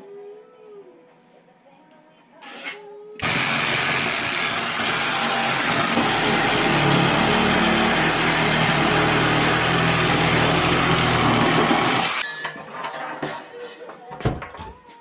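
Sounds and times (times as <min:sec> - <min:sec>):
reciprocating saw cutting: 0:03.2 - 0:12.2.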